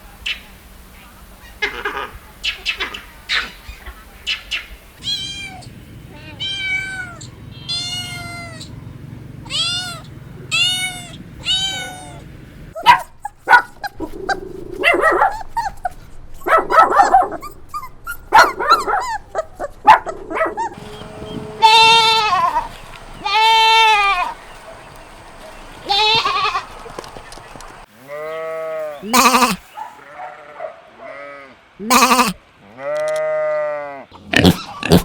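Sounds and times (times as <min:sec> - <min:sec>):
bleating: 0:05.0 - 0:08.7, 0:09.5 - 0:12.2, 0:18.4 - 0:24.4, 0:25.8 - 0:26.7, 0:28.0 - 0:35.0
cat meowing: 0:05.0 - 0:08.7, 0:09.5 - 0:12.2.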